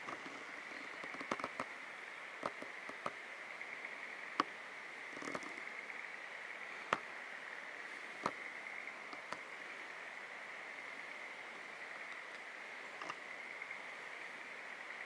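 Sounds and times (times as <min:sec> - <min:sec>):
sharp clicks: 0:00.0 - 0:01.7
steady high hiss: 0:00.0 - 0:15.0.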